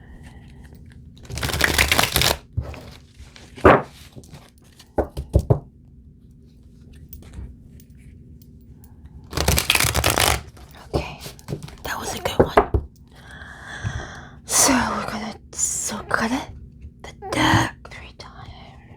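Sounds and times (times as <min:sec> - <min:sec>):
cards snapping: 0:01.2 - 0:02.4, 0:09.3 - 0:10.6
cards riffle shuffling: 0:01.2 - 0:03.0, 0:09.3 - 0:10.7.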